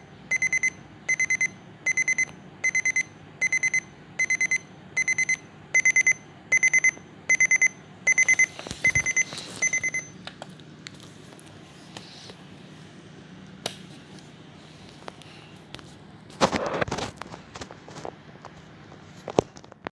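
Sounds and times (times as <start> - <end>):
alarm clock beeping: 0.3 - 10.1.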